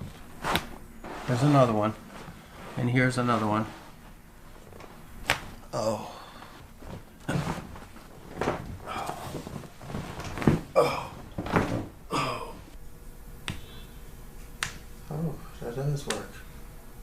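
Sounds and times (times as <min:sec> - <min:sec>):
person exclaiming: 0:05.7 - 0:06.2.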